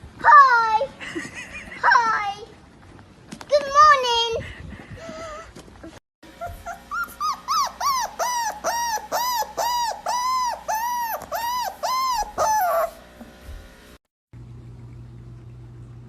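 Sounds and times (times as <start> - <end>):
dog whining: 6.2 - 13.0.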